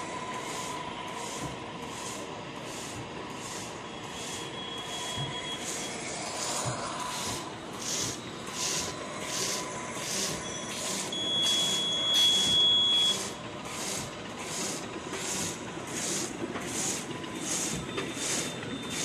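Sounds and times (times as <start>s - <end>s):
bag making machine hissing strokes: 0.0s - 19.0s
steady high tone: 3.8s - 13.4s.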